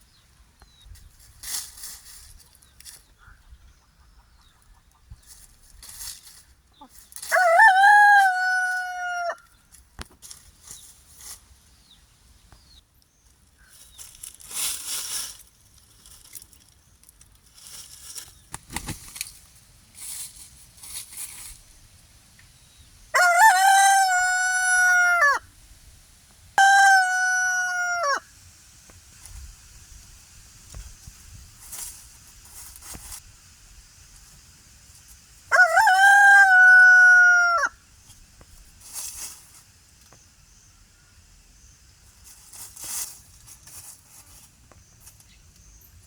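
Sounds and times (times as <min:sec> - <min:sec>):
rooster crowing: 0:07.3 - 0:09.4, 0:23.1 - 0:25.4, 0:26.6 - 0:28.3, 0:35.5 - 0:37.8.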